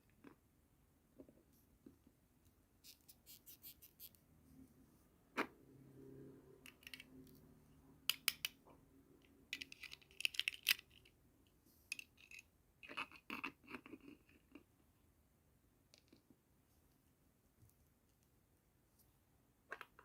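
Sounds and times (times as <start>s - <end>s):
plastic toy pieces clicking: 9.5s - 11.1s.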